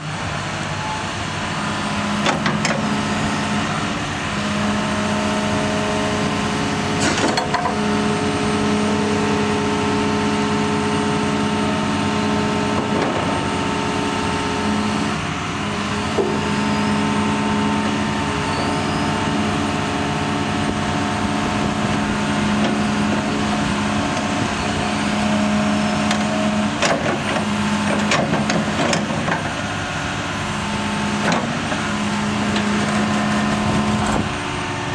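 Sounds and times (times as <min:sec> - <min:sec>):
diesel engine running: 0:00.0 - 0:34.9
machine knocks and clanks: 0:26.8 - 0:29.6.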